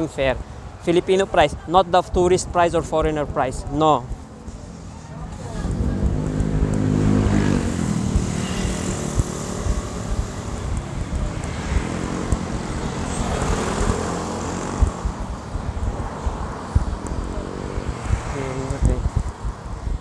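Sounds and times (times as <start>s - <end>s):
vehicle engine passing: 4.1s - 19.2s.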